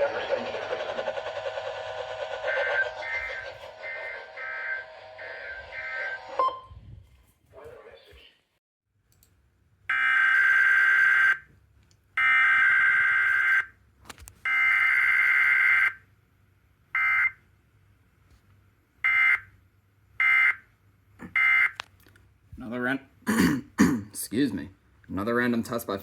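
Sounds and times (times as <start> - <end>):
warbling data bursts: 0.0 - 6.5.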